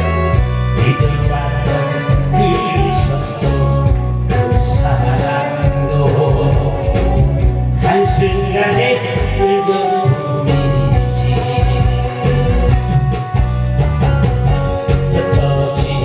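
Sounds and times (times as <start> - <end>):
person singing: 0.0 - 13.6, 14.5 - 16.0
loud amplified music with bass: 0.0 - 16.0.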